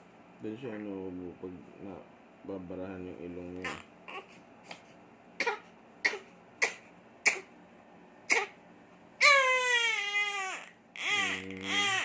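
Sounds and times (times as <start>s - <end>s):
infant crying: 3.6s - 4.4s, 9.2s - 12.0s
infant coughing: 5.4s - 7.5s, 8.2s - 8.6s.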